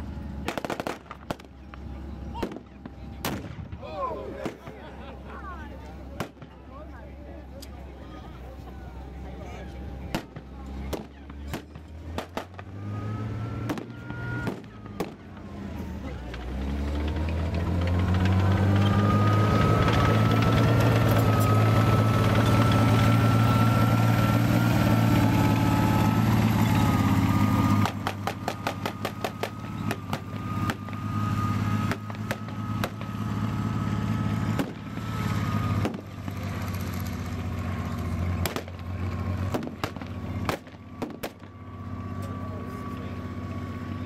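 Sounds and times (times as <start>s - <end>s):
heavy vehicle engine running: 0.0s - 44.0s
thin steady whine: 41.7s - 44.0s.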